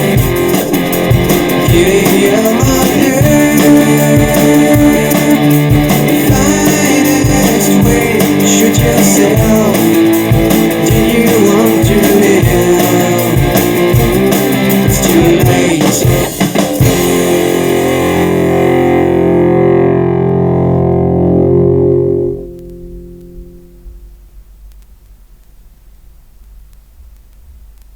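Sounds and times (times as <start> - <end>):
drums: 0.0 - 20.1
electric guitar: 0.0 - 24.1
final chord ringing out: 17.4 - 24.1.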